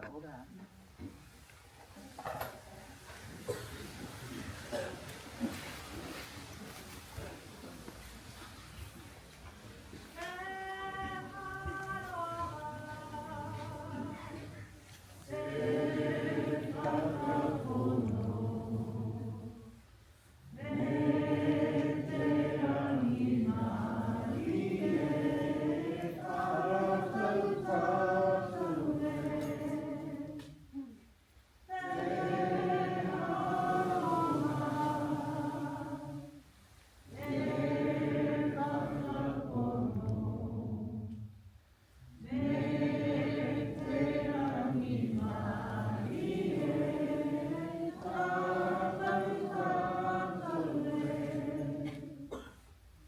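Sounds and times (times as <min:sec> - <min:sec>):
group singing unaccompanied: 0:10.3 - 0:19.8, 0:20.4 - 0:30.7, 0:31.7 - 0:41.5, 0:42.1 - 0:52.5.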